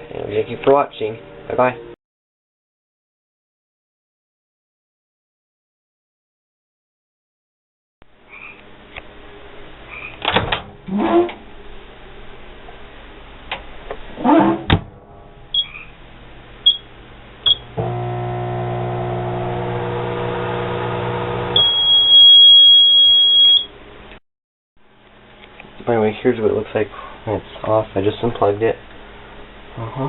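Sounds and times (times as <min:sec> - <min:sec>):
microwave oven humming: 0:14.9 - 0:22.1
long high beep: 0:21.6 - 0:23.7
short keypad beeps: 0:21.6 - 0:23.7.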